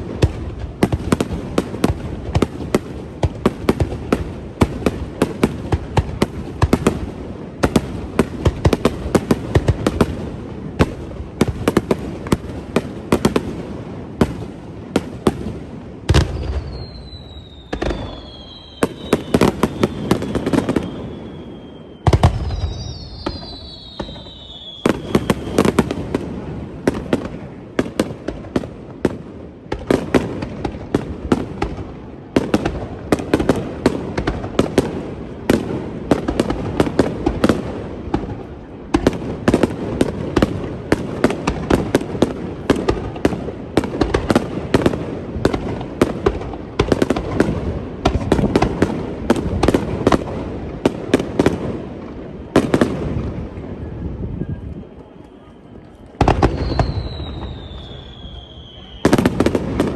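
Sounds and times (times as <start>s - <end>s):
firework booms: 0.0s - 55.2s, 56.0s - 59.9s
fireworks crackling pops: 0.0s - 59.9s
falling firework whistle: 16.1s - 27.3s, 51.4s - 59.9s.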